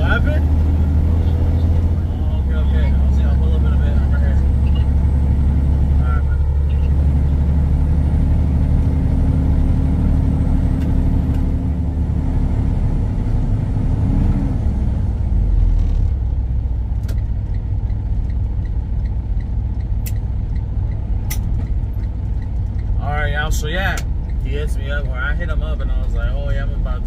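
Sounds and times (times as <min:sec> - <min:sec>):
diesel truck engine rumble: 0:00.0 - 0:27.0
sharp clicks: 0:17.0 - 0:23.0.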